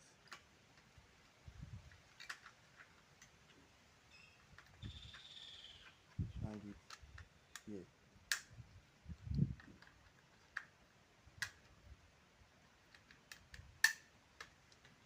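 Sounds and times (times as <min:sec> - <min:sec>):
small metal clicks and taps: 0:00.2 - 0:03.6, 0:04.4 - 0:08.5, 0:09.2 - 0:10.8, 0:11.4 - 0:11.8, 0:12.8 - 0:15.0.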